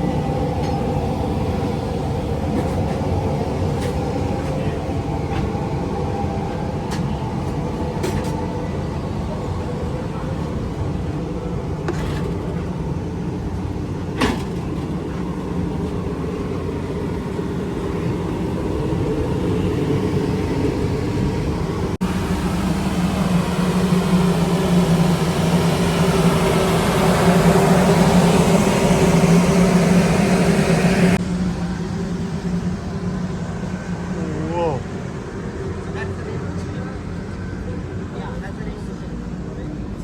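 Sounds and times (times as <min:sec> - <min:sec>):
mechanical drone: 0:15.4 - 0:36.0.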